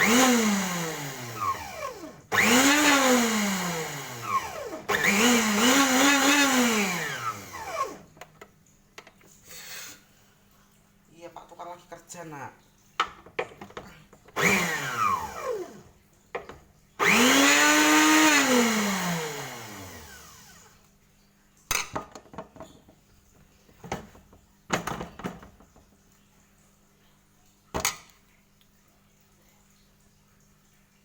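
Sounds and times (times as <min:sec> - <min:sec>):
small electric motor whirring: 0:00.0 - 0:08.1, 0:14.4 - 0:15.9, 0:17.0 - 0:20.8.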